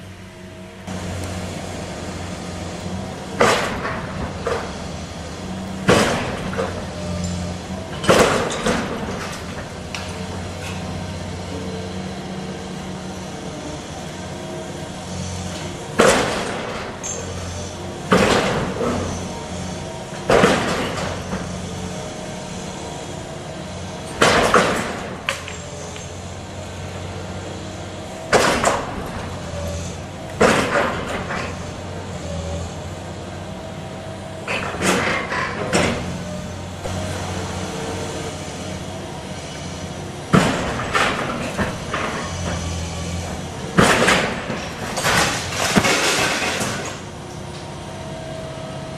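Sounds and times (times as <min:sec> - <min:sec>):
machine engine running: 0:00.0 - 0:48.9
rubble crashing: 0:43.7 - 0:47.1.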